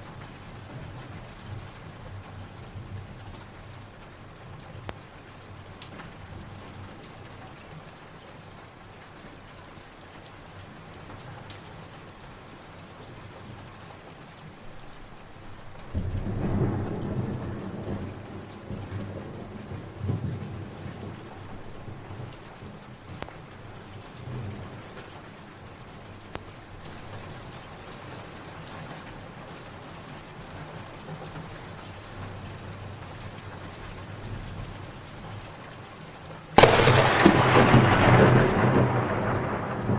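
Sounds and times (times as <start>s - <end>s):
steady rainfall: 0.0s - 39.9s
thunder rumbling: 15.9s - 22.5s, 36.6s - 39.9s.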